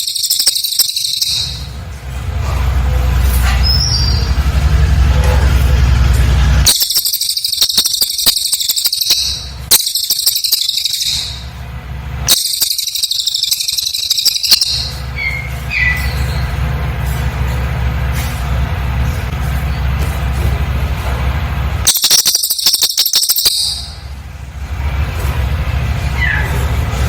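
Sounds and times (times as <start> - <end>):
bird chattering trills: 0.0 - 1.8, 6.7 - 16.8, 21.8 - 24.1.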